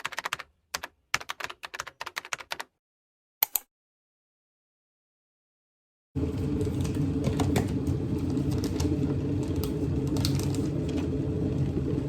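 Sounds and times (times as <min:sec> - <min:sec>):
fast typing on a keyboard: 0:00.0 - 0:02.8.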